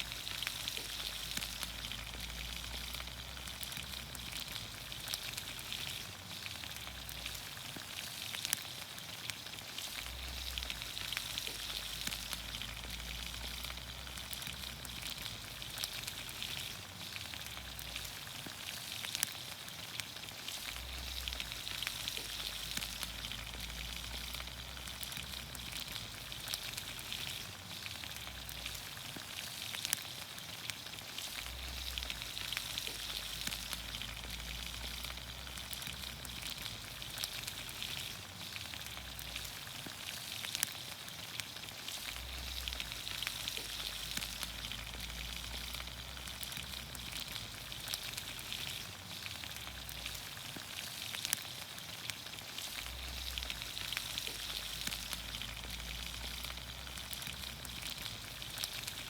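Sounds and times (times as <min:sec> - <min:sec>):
small pops and crackles: 0:00.0 - 0:59.0
vegetables sizzling in a pan: 0:00.0 - 0:59.0.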